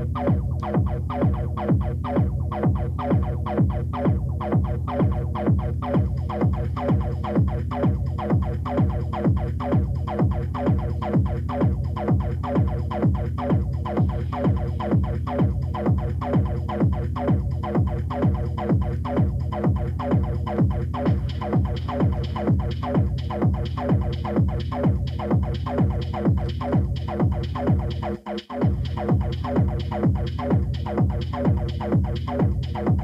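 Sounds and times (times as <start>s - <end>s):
heavy bassline: 0.0s - 33.0s
techno kick drum: 0.0s - 33.0s.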